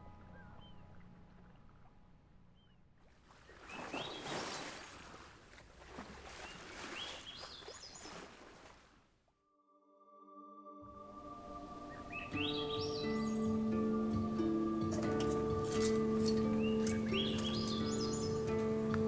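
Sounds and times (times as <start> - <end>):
high chirping bird calls: 11.2 - 19.0.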